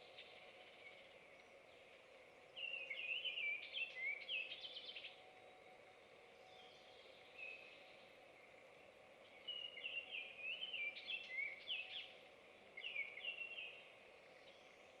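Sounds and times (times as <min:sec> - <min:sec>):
songbird singing: 0:00.0 - 0:05.2, 0:09.3 - 0:12.2, 0:12.8 - 0:15.0
faint background noise: 0:00.0 - 0:15.0.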